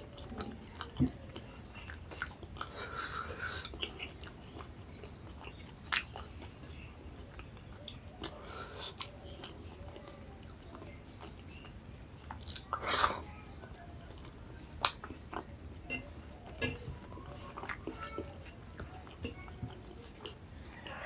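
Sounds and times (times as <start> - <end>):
person chewing food: 0.0 - 21.0.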